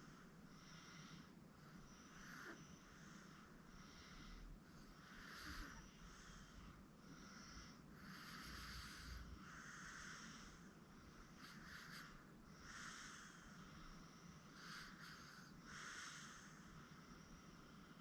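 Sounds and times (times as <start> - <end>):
baby breathing: 14.5 - 16.5.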